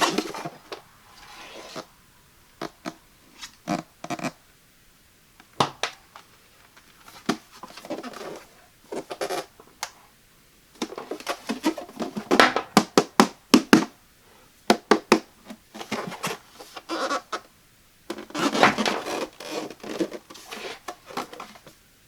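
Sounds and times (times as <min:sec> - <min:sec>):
hands handling plastic and packaging: 0:18.1 - 0:21.8.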